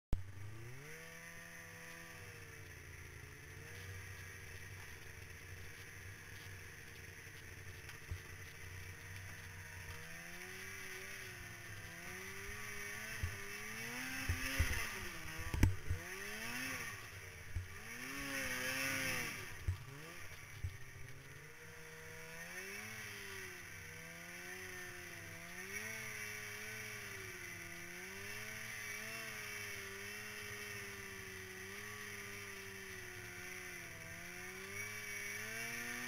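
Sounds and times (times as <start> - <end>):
snowmobile engine revving: 0.2 - 36.0.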